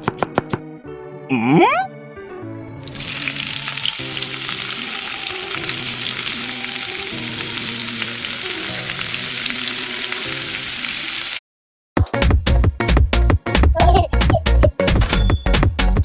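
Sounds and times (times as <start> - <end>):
soft music: 0.0 - 10.9, 13.1 - 16.0
fries sizzling in hot oil: 2.8 - 11.4.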